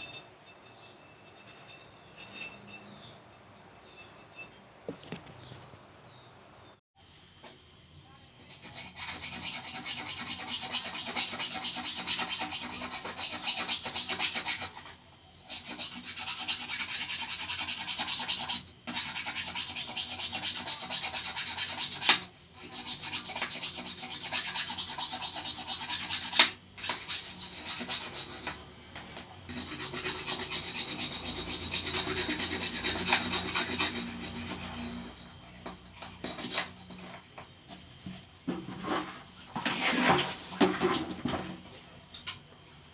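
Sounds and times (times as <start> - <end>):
abrasive scrubbing rusty metal: 29.4 - 37.1.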